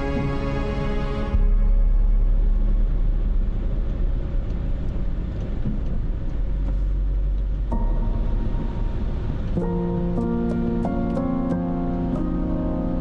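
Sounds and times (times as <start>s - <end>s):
music chords: 0.0s - 3.6s, 7.7s - 13.0s.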